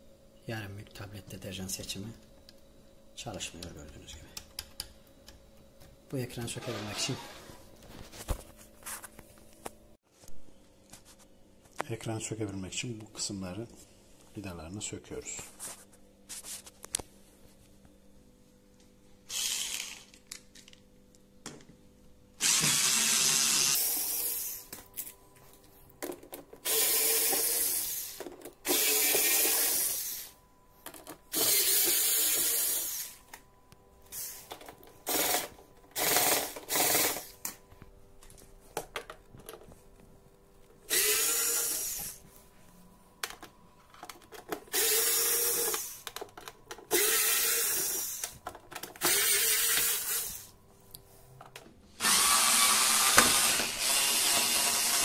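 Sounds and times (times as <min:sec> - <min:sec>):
electric screwdriver motor whine: 0:22.4 - 0:24.6, 0:26.6 - 0:30.3, 0:31.3 - 0:33.2, 0:35.1 - 0:37.3, 0:40.9 - 0:42.2, 0:44.7 - 0:46.0, 0:46.9 - 0:48.3, 0:49.0 - 0:50.5, 0:52.0 - 0:55.0.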